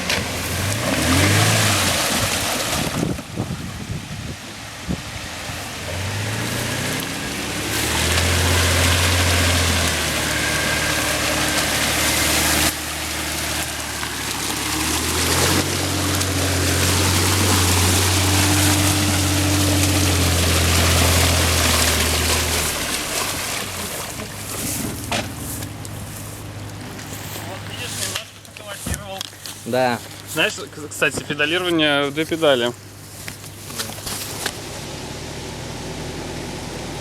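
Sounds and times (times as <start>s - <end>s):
engine revving hard: 0.0s - 3.0s, 5.8s - 23.7s.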